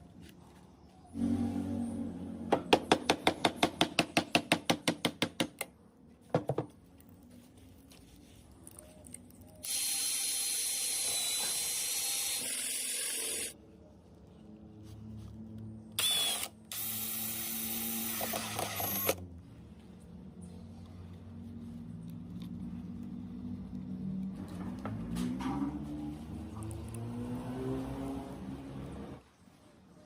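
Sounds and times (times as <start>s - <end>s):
high-pitched power tool whirr: 9.6s - 13.6s, 16.0s - 19.2s.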